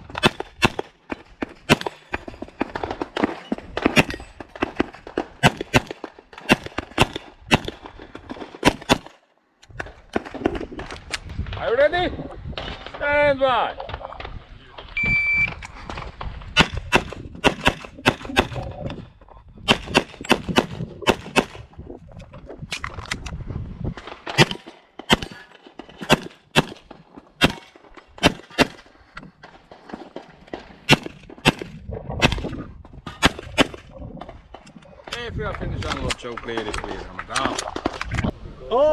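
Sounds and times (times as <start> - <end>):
pistol shots: 0.2 - 1.0, 1.6 - 9.2, 16.6 - 18.6, 19.7 - 21.6, 24.3 - 28.9, 29.5 - 32.5, 33.1 - 33.8
shot timer beep: 15.0 - 15.6.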